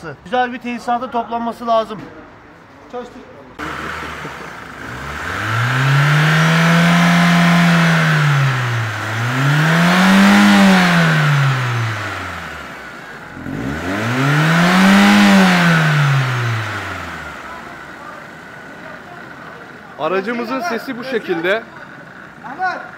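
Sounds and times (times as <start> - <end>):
car engine revving: 3.6 - 22.7.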